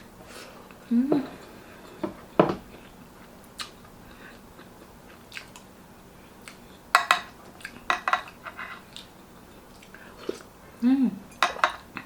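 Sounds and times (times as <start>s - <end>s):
chewing with wet mouth smacks: 3.5s - 3.8s, 4.6s - 5.7s, 8.9s - 9.1s.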